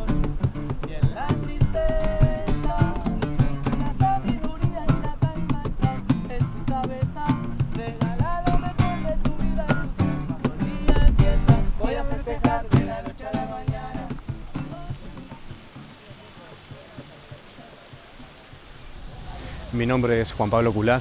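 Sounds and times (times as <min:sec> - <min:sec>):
plucked acoustic guitar music: 0:00.0 - 0:20.0.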